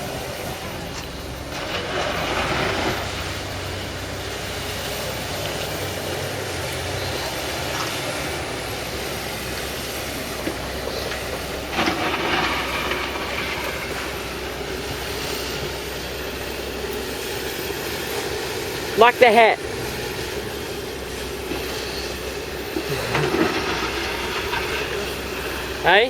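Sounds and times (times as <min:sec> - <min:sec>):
excavator engine rumble: 0:00.0 - 0:26.0
water wash: 0:00.0 - 0:26.0.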